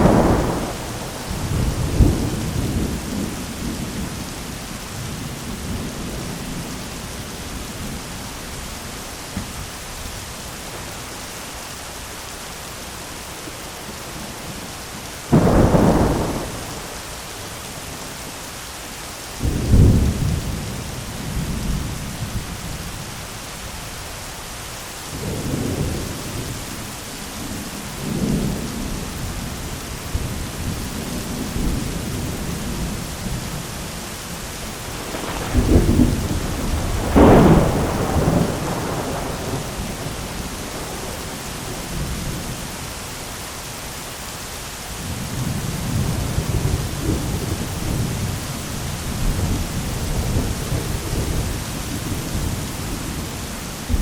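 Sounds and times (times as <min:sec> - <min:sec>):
thunder: 0:00.0 - 0:04.2, 0:15.3 - 0:17.0, 0:34.8 - 0:42.5, 0:45.0 - 0:54.0
heavy rain on an umbrella: 0:00.0 - 0:54.0.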